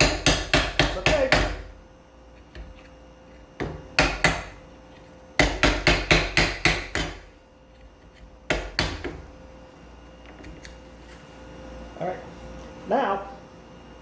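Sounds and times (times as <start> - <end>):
mallet striking chisel: 0.0 - 1.6, 3.6 - 4.6, 5.4 - 7.2, 8.5 - 9.2.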